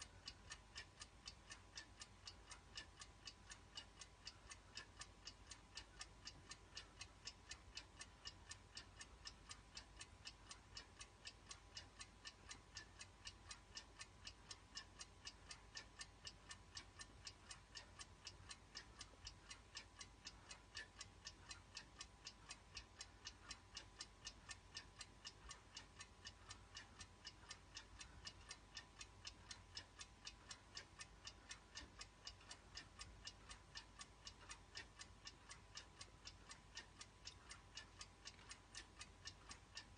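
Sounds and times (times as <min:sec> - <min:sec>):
alarm clock ticking: 0:00.0 - 0:39.9.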